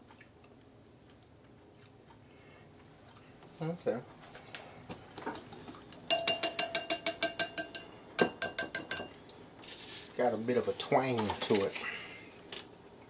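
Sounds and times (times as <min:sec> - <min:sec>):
utensil clinking against bowl: 0:06.1 - 0:09.2.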